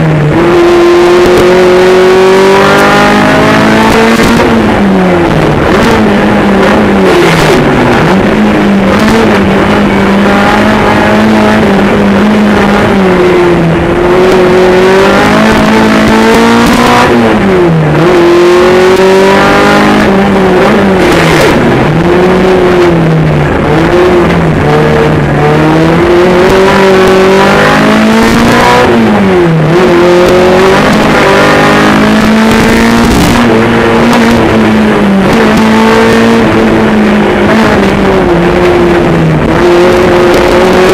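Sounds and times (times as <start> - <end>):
racing car engine revving: 0.0 - 40.9.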